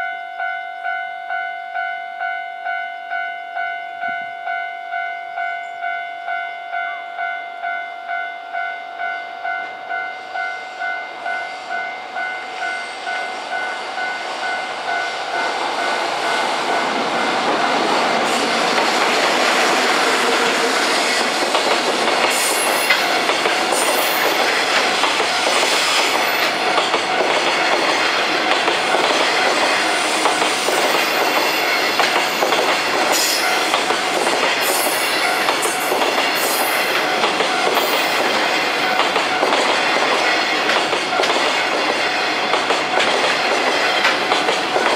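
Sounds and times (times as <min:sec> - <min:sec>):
freight train passing: 0:00.0 - 0:44.9
level-crossing alarm ringing: 0:00.0 - 0:44.9
train wheels clattering on rail joints: 0:13.1 - 0:44.9.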